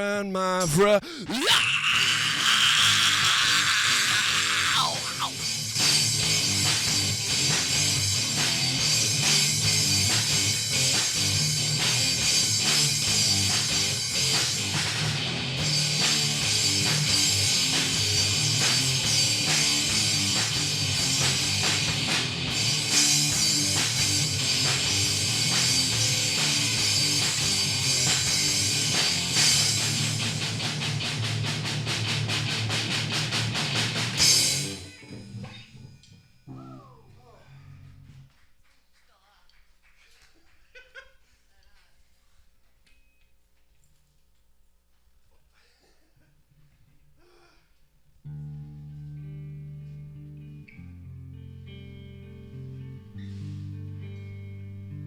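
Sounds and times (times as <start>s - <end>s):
electric guitar: 1.2s - 37.0s, 48.3s - 55.0s
drum kit beat: 5.0s - 35.2s.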